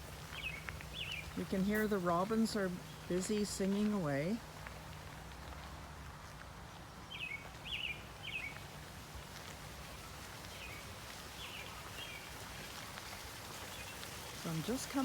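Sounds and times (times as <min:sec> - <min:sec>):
robin singing whistled notes: 0:00.3 - 0:01.6.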